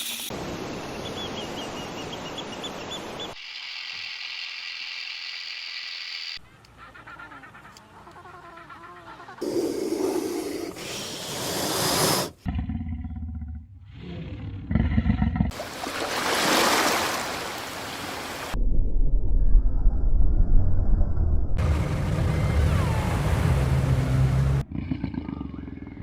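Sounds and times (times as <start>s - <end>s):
wild animal calls: 6.8s - 12.9s
long hiss-like rush: 9.4s - 12.4s.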